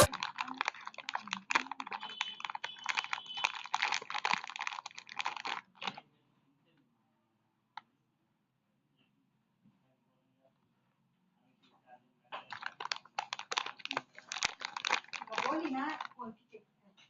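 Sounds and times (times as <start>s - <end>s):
plastic packaging crinkling: 0.0s - 6.0s, 12.4s - 16.2s.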